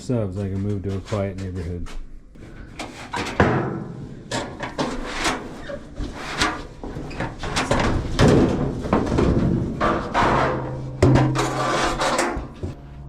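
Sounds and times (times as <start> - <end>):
sheet metal clanking and scraping: 2.6 - 12.8.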